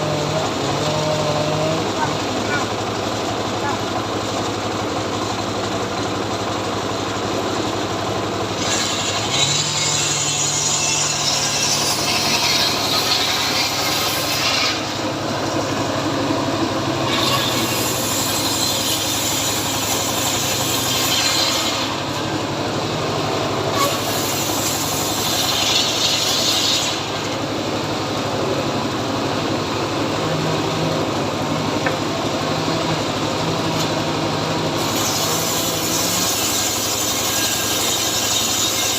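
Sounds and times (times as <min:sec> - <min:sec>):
chainsaw cutting tree trunk: 0:00.0 - 0:04.0, 0:08.2 - 0:15.8, 0:16.4 - 0:22.8, 0:23.5 - 0:27.6, 0:31.8 - 0:38.9.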